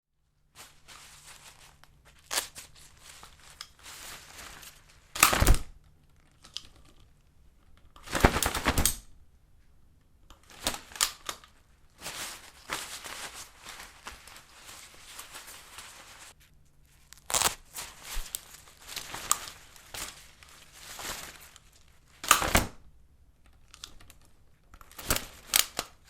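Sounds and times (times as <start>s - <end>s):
umbrella fabric rustling: 0.5s - 5.6s, 10.4s - 22.6s
umbrella frame clicks and rattles: 4.5s - 7.1s, 7.7s - 9.1s, 22.2s - 22.8s.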